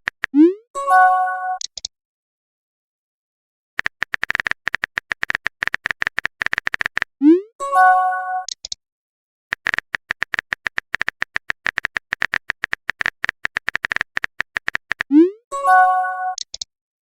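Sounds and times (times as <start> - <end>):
rapid typing clicks: 0.0 - 0.3, 3.8 - 7.1, 9.5 - 15.1
bright message chime: 15.5 - 16.4.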